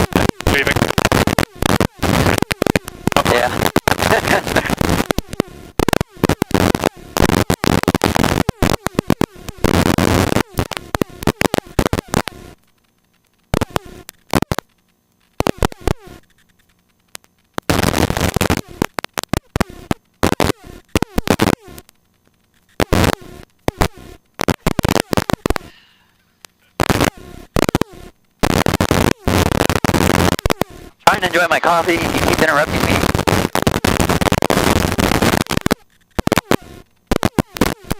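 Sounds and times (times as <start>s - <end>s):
helicopter cabin noise: 0.0s - 1.0s, 30.9s - 33.1s.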